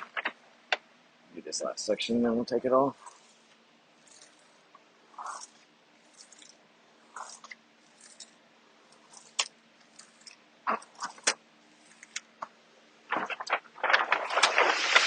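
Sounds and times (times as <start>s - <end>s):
squeegee scraping and tapping: 3.0s - 14.1s.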